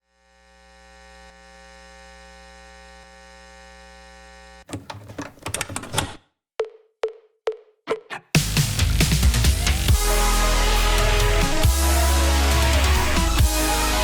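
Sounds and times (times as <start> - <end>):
electronic buzzing hum: 0.0 - 4.7.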